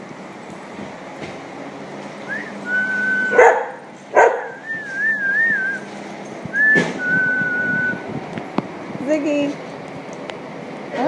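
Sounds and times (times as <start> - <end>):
small dog barking: 3.3 - 4.6.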